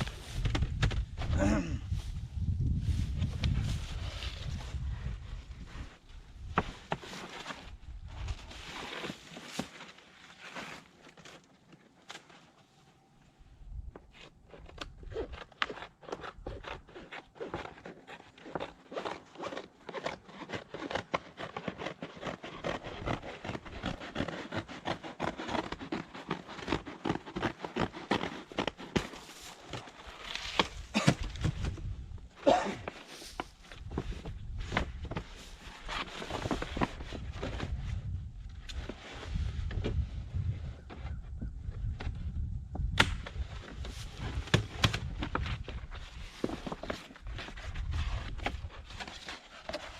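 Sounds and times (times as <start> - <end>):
roofing paper rustling and crackling: 2.8 - 12.6, 14.5 - 38.0, 43.4 - 49.9.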